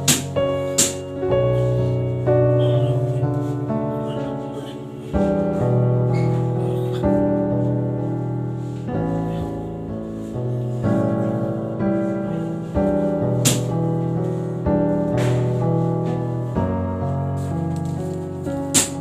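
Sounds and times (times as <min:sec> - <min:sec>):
piano chords: 0:00.0 - 0:19.0.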